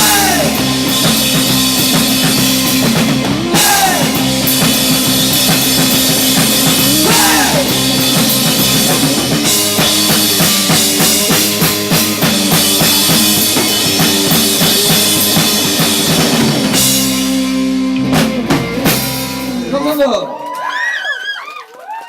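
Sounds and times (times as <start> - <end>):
rapid drum hits: 0.0 - 19.6
rock band playing live: 0.0 - 20.2.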